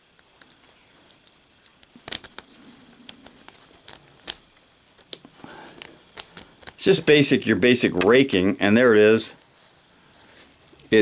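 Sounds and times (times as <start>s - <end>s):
lock pick clicking and scraping: 3.1s - 6.8s.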